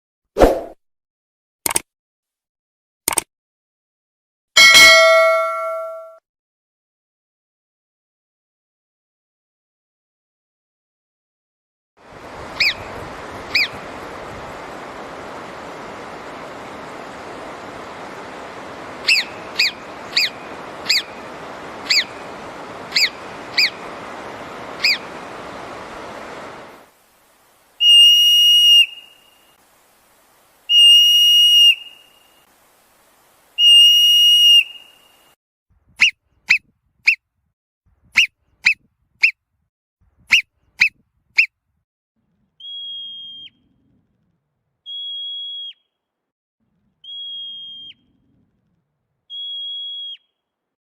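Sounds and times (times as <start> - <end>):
wind noise: 12.0 - 28.2
marmot whistle calls: 12.6 - 12.8, 13.5 - 13.8, 19.0 - 21.2, 21.8 - 22.1, 22.9 - 23.8, 24.8 - 25.1, 27.8 - 29.5, 30.7 - 32.4, 33.6 - 35.1, 40.3 - 41.5, 42.6 - 43.6, 44.9 - 45.9, 47.0 - 48.0, 49.3 - 50.4.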